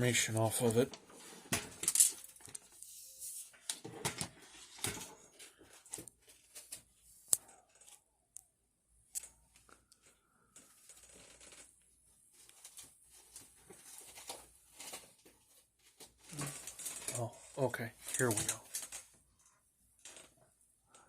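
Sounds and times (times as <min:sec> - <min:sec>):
plastic rustling: 0:10.5 - 0:20.4.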